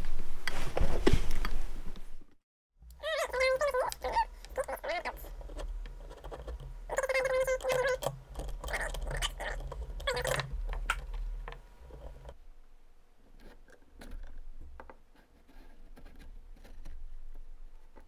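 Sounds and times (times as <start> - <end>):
low hum: 0.0 - 13.0
metal rod squeaking: 3.0 - 12.4.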